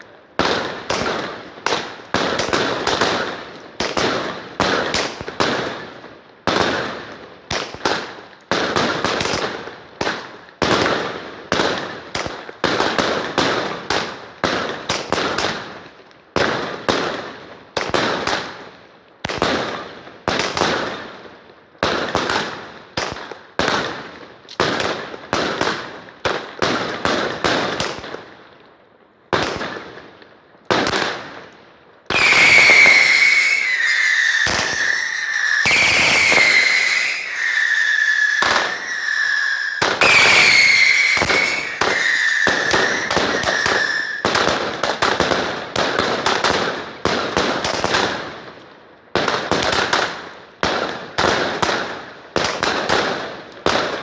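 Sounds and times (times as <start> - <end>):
fireworks bangs with crackle: 0.0 - 28.5, 29.3 - 54.0
loud wavering whistle: 32.2 - 44.2.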